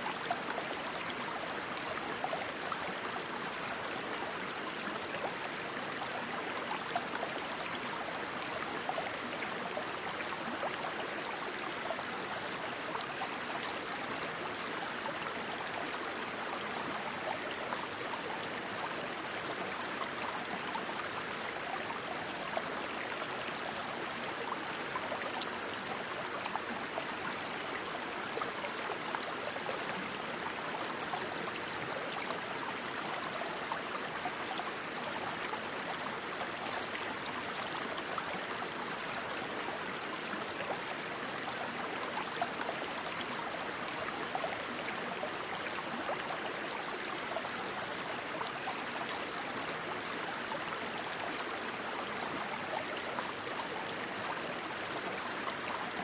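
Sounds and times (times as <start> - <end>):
rushing stream water: 0.0 - 56.0.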